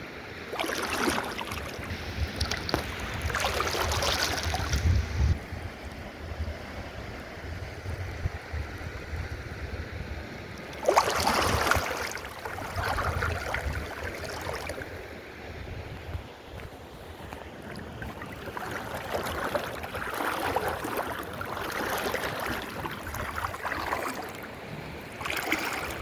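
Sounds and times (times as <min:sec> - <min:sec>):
river water splashing and rushing: 0:00.0 - 0:26.0
wind rumble on microphone: 0:01.6 - 0:20.9.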